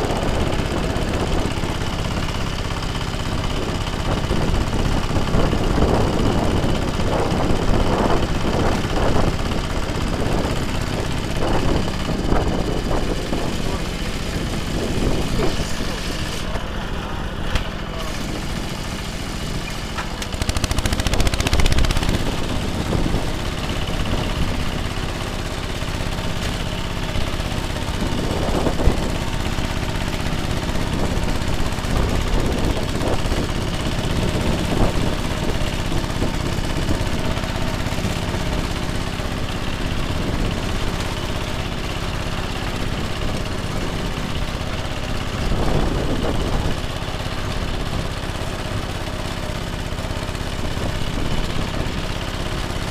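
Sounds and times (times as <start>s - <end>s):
rotary tiller working soil: 0.0s - 52.9s
tractor engine running: 0.0s - 52.9s.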